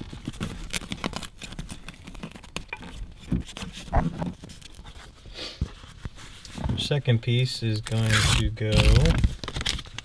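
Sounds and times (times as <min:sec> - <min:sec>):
insulation padding crinkling: 0:00.0 - 0:10.0
loud thump: 0:06.5 - 0:07.0.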